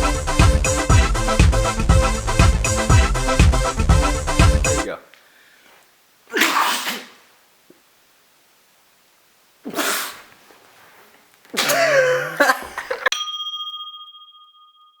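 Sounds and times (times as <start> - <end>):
person sneezing: 6.3 - 7.3, 9.6 - 10.3, 11.5 - 13.1
bell-like ding: 13.1 - 15.0.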